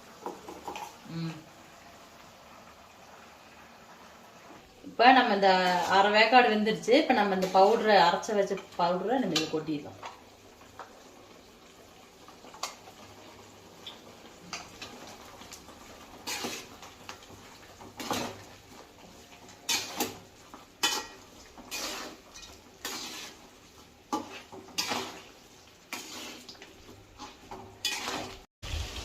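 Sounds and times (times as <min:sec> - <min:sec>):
spoon scraping a cooking pan: 0:07.0 - 0:10.2, 0:13.9 - 0:28.4.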